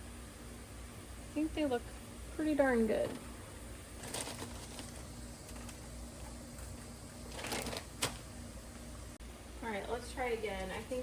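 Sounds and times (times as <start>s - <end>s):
faint steady hum: 0.0s - 11.0s
parchment paper crinkling: 4.0s - 5.8s, 6.6s - 8.3s.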